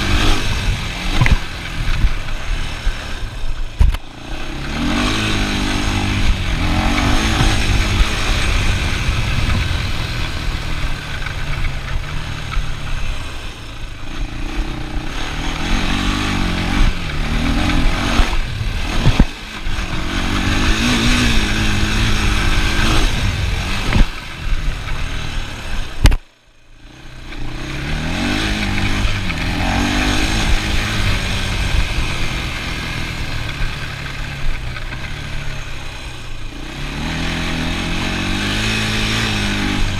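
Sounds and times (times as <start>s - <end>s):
atv engine revving: 0.0s - 39.9s
sharp click: 1.1s - 2.1s, 3.8s - 4.1s, 26.0s - 26.3s.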